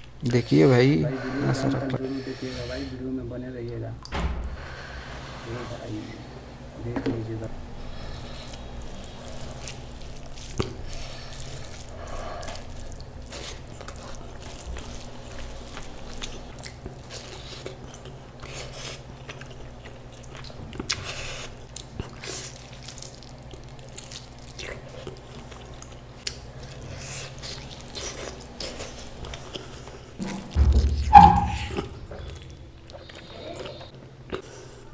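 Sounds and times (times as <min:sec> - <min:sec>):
steady low hum: 0:00.0 - 0:34.9
wet chewing and smacking: 0:08.0 - 0:30.8, 0:31.4 - 0:34.6.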